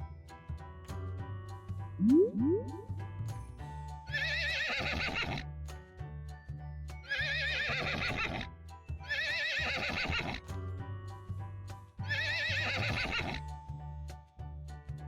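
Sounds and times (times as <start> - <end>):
horse whinnying: 4.2 - 5.4, 7.1 - 8.4, 9.1 - 10.4, 12.1 - 13.4.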